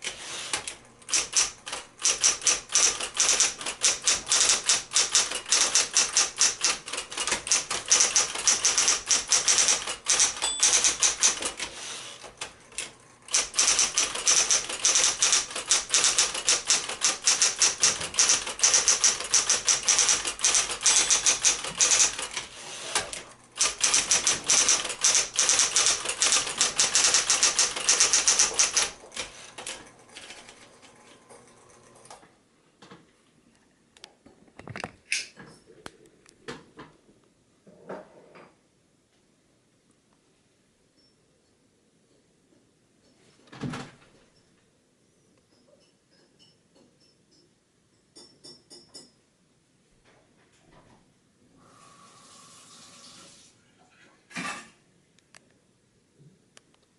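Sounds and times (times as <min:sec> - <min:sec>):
typewriter motor humming: 0:00.0 - 0:30.5
electric typewriter typing: 0:00.0 - 0:30.8.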